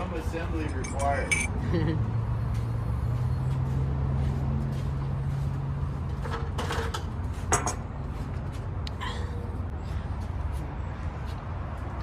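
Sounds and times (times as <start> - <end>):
metal frame parts clinking: 0.5 - 1.5.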